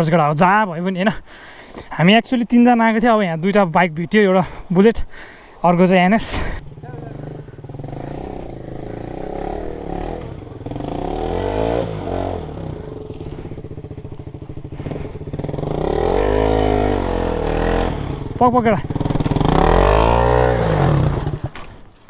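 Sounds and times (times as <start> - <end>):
motorcycle engine revving: 6.2 - 21.8.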